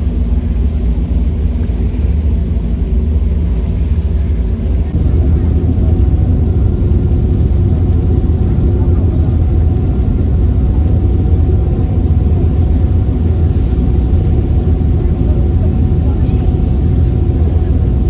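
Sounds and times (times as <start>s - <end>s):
ferry engine drone: 0.0s - 18.0s.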